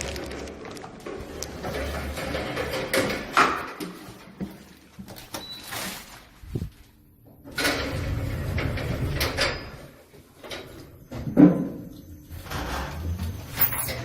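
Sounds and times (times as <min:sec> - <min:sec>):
lift doors sliding and knocking: 0:01.0 - 0:04.0, 0:07.4 - 0:11.8
lift mechanism rumble: 0:07.4 - 0:09.9.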